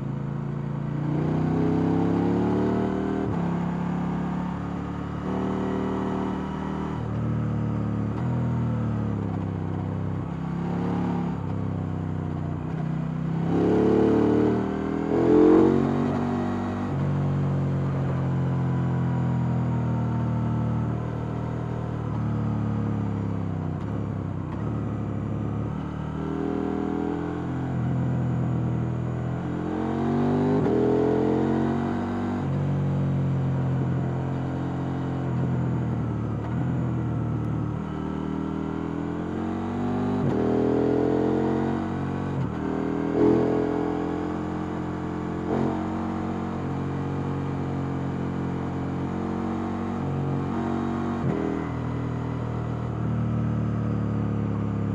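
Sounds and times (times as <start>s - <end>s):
motorcycle engine revving: 1.0s - 7.3s, 13.3s - 17.0s, 22.8s - 54.9s.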